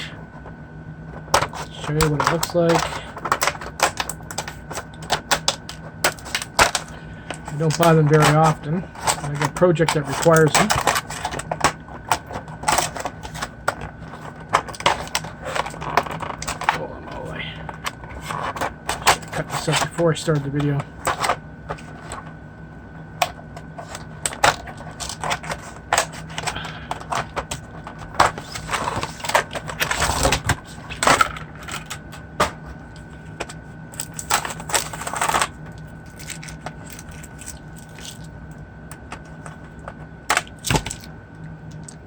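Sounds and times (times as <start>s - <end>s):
faint steady hum: 0.0s - 42.0s
scraping and rustling: 1.2s - 22.4s, 23.5s - 42.0s.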